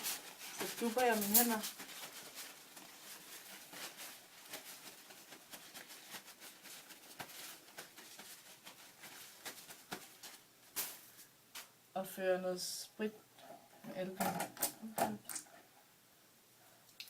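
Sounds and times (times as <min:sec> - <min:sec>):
paper towel patting hands: 0:00.0 - 0:11.8.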